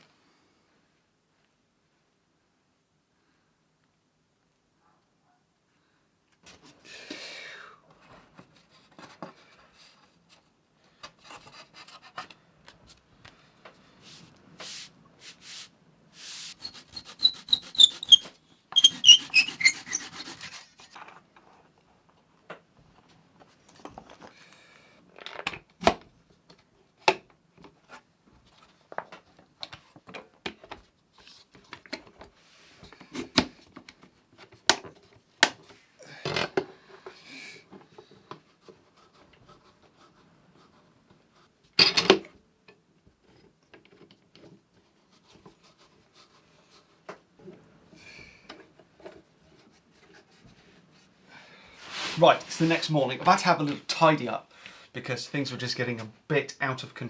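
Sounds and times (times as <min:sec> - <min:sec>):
rubbing and scraping wood: 0:14.0 - 0:21.1, 0:51.8 - 0:53.9.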